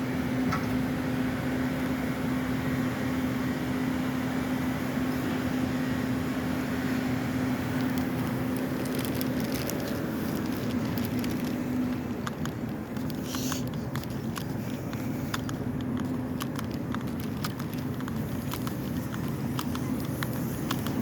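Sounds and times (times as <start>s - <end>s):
small clicks and rattles: 7.7s - 21.0s.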